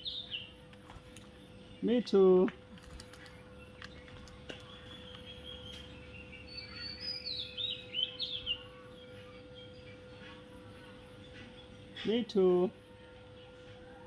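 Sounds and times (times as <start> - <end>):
bird chirping: 0.0 - 0.7, 3.2 - 10.4
faint steady hum: 0.0 - 14.0.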